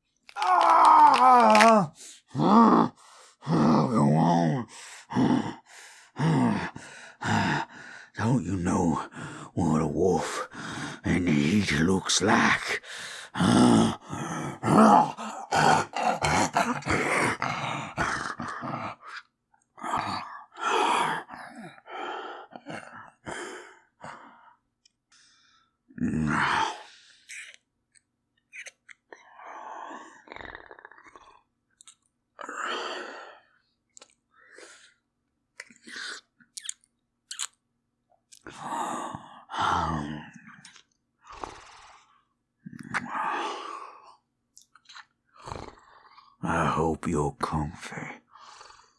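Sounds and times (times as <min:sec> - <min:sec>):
man growling: 0:00.4 - 0:05.6, 0:13.4 - 0:19.2, 0:26.0 - 0:26.8
heavy breaths: 0:04.6 - 0:08.2, 0:09.0 - 0:11.2, 0:12.6 - 0:25.8
wet lip smacks and clicks: 0:27.3 - 0:29.0, 0:31.8 - 0:32.1, 0:33.9 - 0:34.2, 0:35.6 - 0:37.6, 0:40.6 - 0:41.0, 0:44.5 - 0:45.2.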